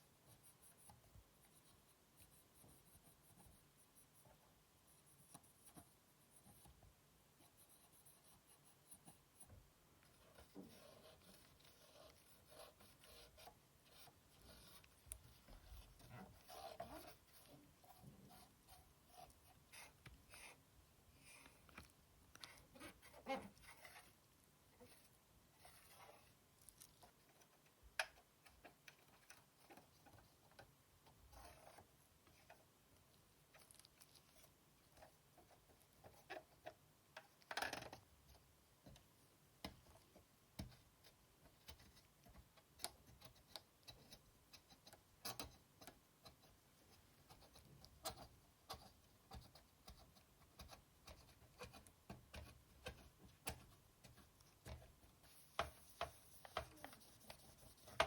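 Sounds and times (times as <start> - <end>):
brushing on plastic: 7.6 - 27.6, 46.3 - 58.0.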